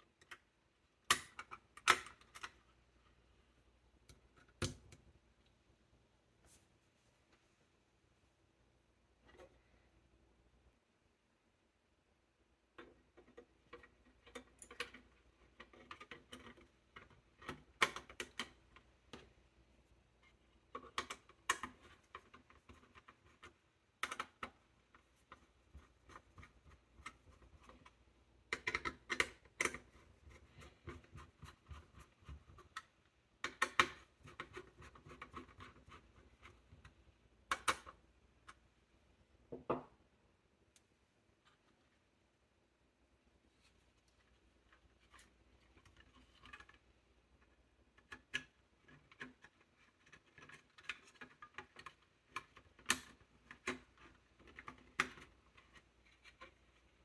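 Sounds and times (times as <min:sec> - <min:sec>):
clicks and taps of small computer parts: 0:28.5 - 0:30.0, 0:37.5 - 0:38.6.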